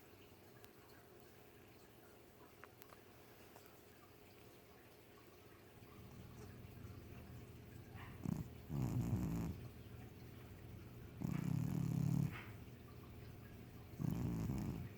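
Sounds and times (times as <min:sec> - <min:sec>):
cat snoring: 0:08.2 - 0:09.7, 0:11.2 - 0:12.6, 0:14.0 - 0:14.9.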